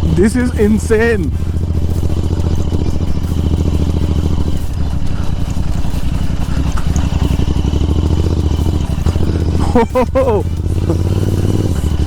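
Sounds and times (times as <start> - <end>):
motorcycle with loud exhaust: 0.0 - 12.0.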